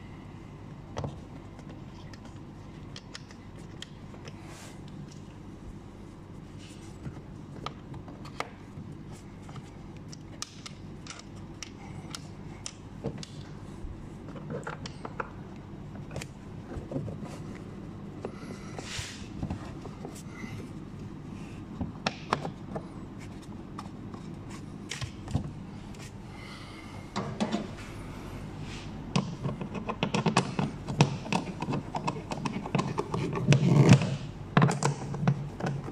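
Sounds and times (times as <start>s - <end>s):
steady low hum: 0.0s - 35.9s
parts being handled clicking: 1.4s - 5.3s, 7.1s - 13.5s, 29.1s - 35.9s.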